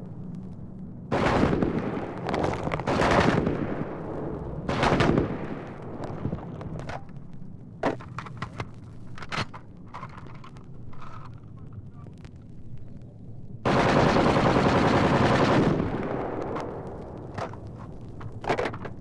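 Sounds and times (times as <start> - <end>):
sharp gunshots: 1.1 - 6.4
heavy explosions: 1.1 - 6.6, 13.6 - 18.4.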